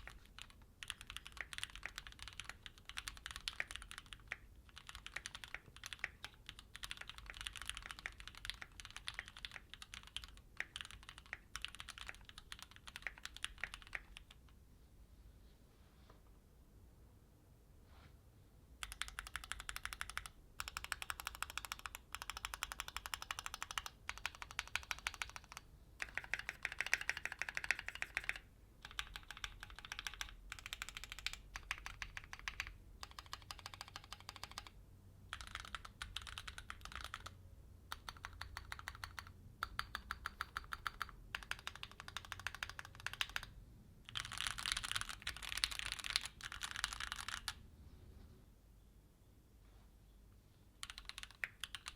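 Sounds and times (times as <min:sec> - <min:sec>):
mechanical keyboard key clacks: 0:50.8 - 0:51.9.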